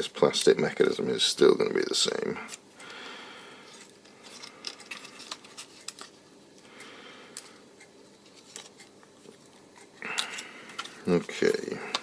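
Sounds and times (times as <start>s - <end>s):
plastic parts clicking and tapping: 10.2s - 11.0s.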